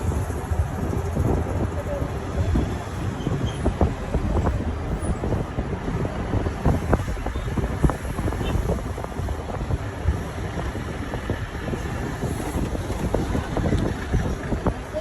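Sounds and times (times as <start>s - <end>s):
bus engine and road noise: 0.0s - 15.0s
wind buffeting microphone: 0.0s - 15.0s
rattles and knocks: 2.7s - 9.6s.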